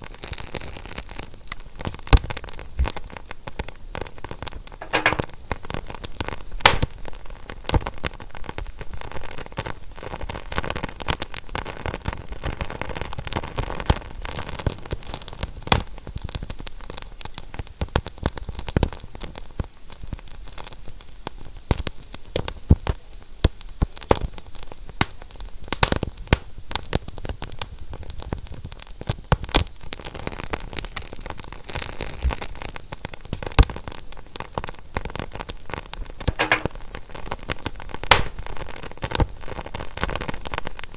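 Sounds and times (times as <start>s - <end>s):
fire crackling and popping: 6.6s - 7.0s, 36.3s - 36.8s, 38.1s - 39.1s.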